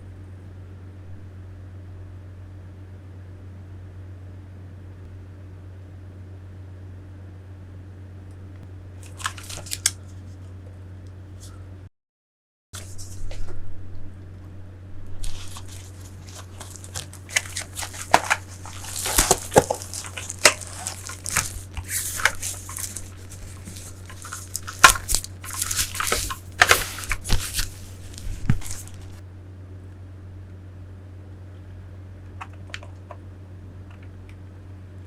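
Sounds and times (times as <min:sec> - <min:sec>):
packaging crinkling and rustling: 0:09.0 - 0:10.5, 0:15.2 - 0:29.2.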